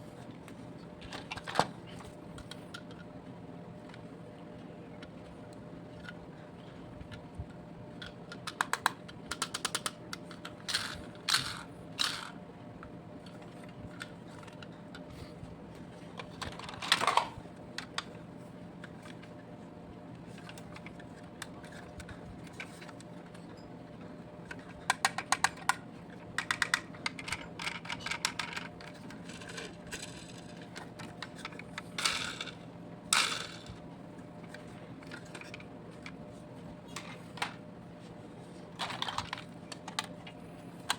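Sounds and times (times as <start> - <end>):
steady low hum: 0.0 - 40.9
toy vehicles clicking and scraping: 8.4 - 12.3, 26.4 - 33.8, 38.8 - 40.1.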